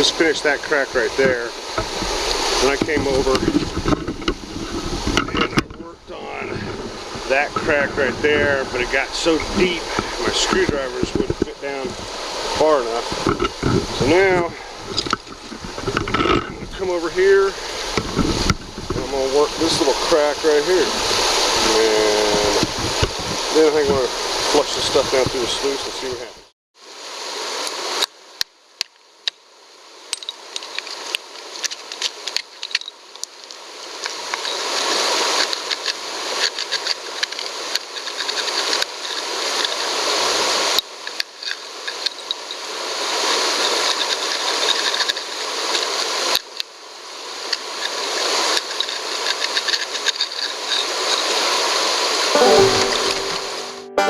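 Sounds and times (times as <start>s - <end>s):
rushing creek water: 0.0s - 28.4s, 33.0s - 52.8s
gravel and stones clicking: 30.2s - 34.6s.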